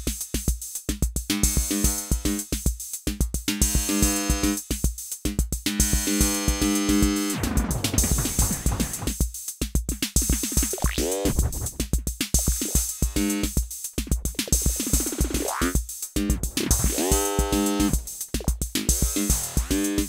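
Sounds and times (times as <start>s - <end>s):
drum machine beat: 6.9s - 20.0s.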